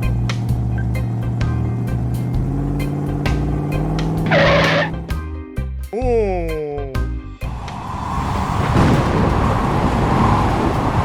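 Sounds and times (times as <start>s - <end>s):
background music with beat: 0.0s - 4.3s
vehicle engine running: 0.0s - 5.1s, 8.3s - 11.0s.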